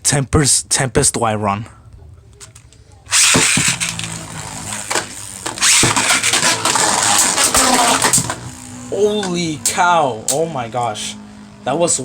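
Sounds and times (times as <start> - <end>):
spinning tops clacking together: 3.1 - 8.6
spinning tops whirring and grinding: 3.1 - 12.0.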